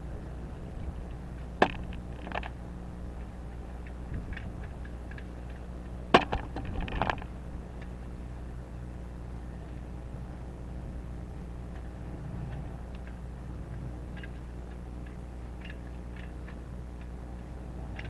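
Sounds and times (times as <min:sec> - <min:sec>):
low hum: 0:00.0 - 0:18.0
caulking gun clicks and knocks: 0:01.6 - 0:02.6.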